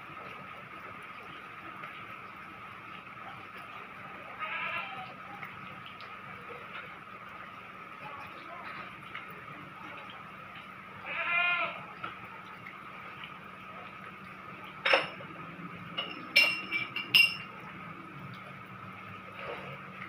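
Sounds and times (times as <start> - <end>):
bleating call: 11.0 - 11.9.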